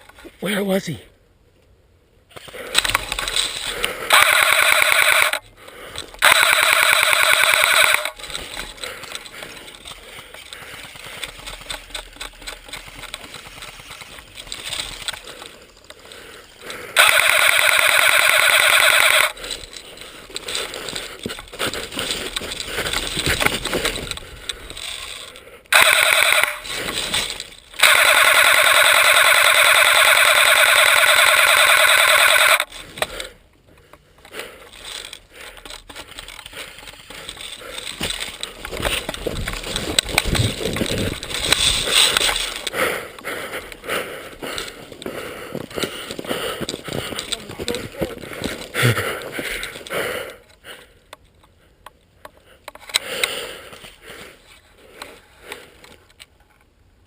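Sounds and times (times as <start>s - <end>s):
clicking and shuffling: 2.3s - 28.4s, 30.3s - 56.8s
airsoft gun firing full auto: 4.1s - 5.4s, 6.2s - 8.4s, 17.0s - 19.4s, 25.7s - 26.9s, 27.8s - 32.7s.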